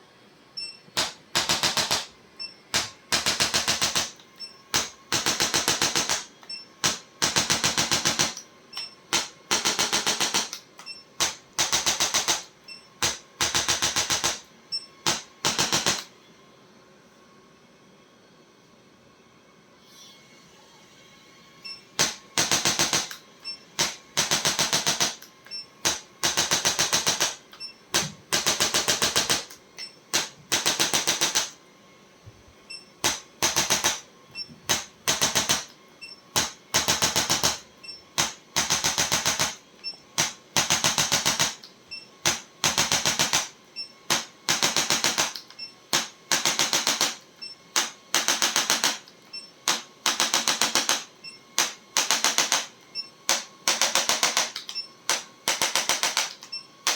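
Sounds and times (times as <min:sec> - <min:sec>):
rapid mechanical clicking: 0:22.0 - 0:23.2, 0:23.8 - 0:31.6, 0:40.2 - 0:52.7, 0:53.3 - 0:56.9.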